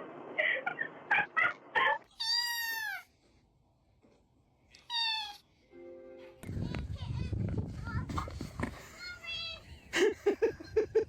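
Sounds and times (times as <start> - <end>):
cat meowing: 2.1 - 3.1, 4.8 - 5.5.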